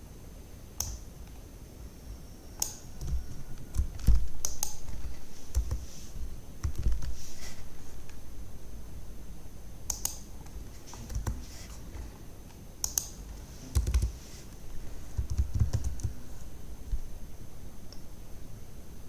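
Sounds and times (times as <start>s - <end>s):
computer keyboard typing: 2.6s - 5.9s, 6.6s - 7.2s, 9.9s - 12.0s, 12.8s - 14.2s, 15.1s - 16.2s.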